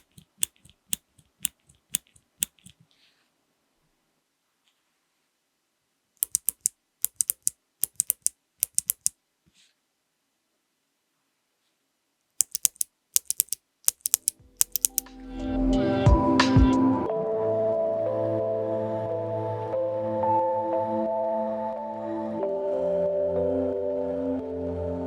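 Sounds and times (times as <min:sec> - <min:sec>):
mechanical keyboard switches clicking: 0:00.0 - 0:02.8, 0:06.2 - 0:09.1, 0:12.4 - 0:15.1
music: 0:14.9 - 0:25.0.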